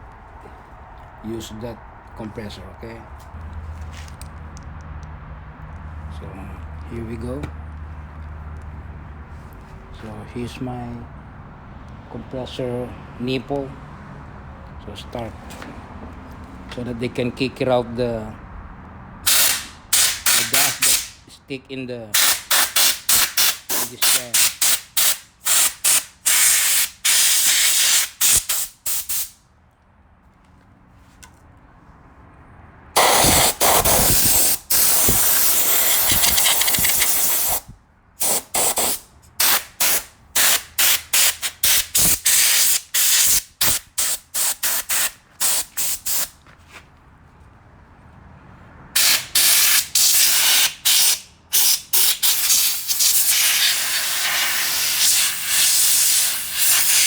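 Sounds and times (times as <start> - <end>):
compressed air nozzle hissing blasts: 19.3 - 21.2, 22.2 - 29.4, 33.0 - 46.3, 49.0 - 57.0.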